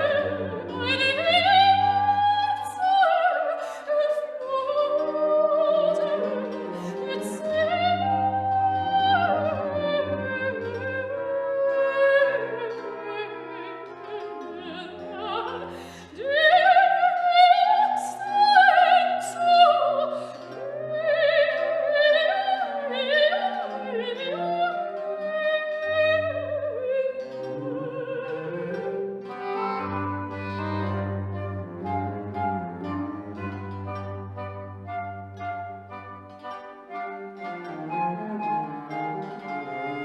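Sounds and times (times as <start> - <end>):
operatic singing voice: 0.0 - 13.6
bowed strings: 0.0 - 40.0.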